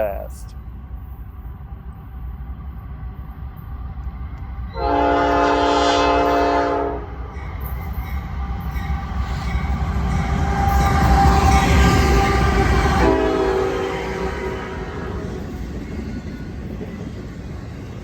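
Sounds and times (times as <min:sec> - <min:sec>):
train rumbling: 0:00.0 - 0:18.0
locomotive horn blast: 0:04.8 - 0:07.1, 0:12.0 - 0:15.3.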